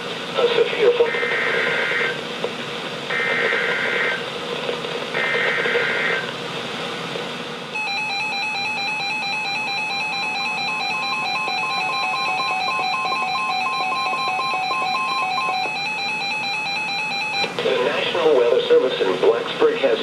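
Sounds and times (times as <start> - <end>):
radio hiss: 0.1 - 7.1, 17.5 - 20.0
two-pitch electronic alert tone: 7.8 - 17.4.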